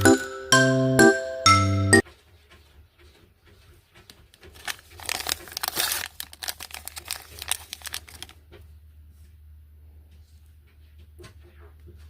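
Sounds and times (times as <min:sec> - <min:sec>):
plastic packaging crinkling and tearing: 0:04.4 - 0:08.4.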